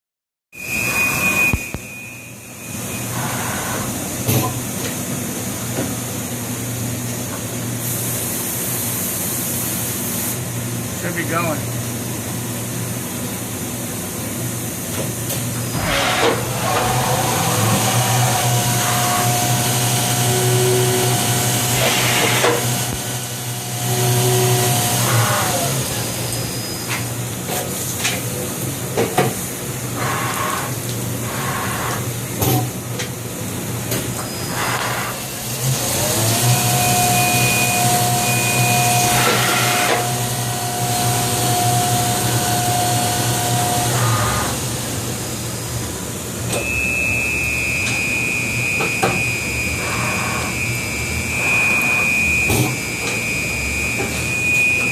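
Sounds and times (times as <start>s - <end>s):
mill motor whine and hum: 0.6s - 8.2s, 11.7s - 54.9s.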